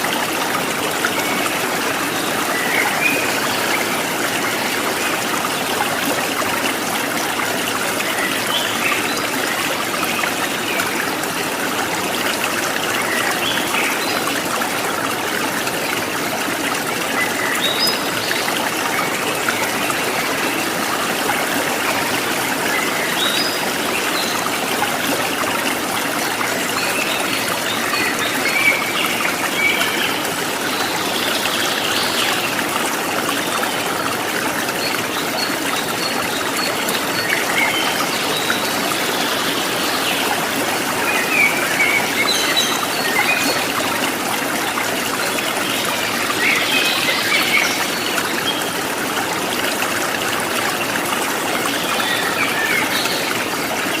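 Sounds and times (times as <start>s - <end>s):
stream water trickling: 0.0s - 54.0s.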